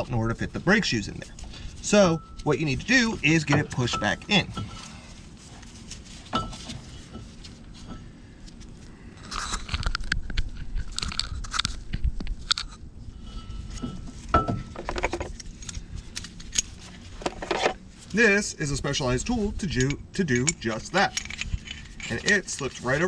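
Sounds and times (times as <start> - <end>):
metal tools clinking and scraping: 0.8 - 5.2, 6.3 - 8.1, 12.5 - 17.8, 19.7 - 23.0.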